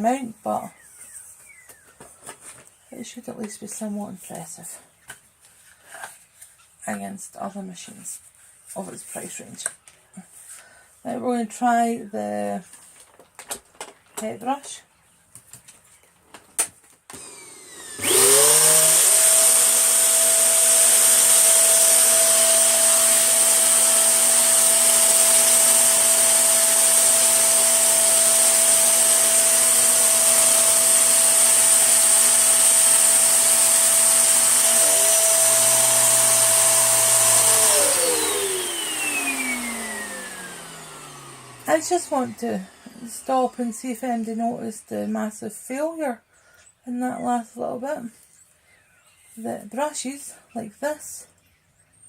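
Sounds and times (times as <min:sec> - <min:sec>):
vacuum cleaner motor whine: 0:17.1 - 0:43.7.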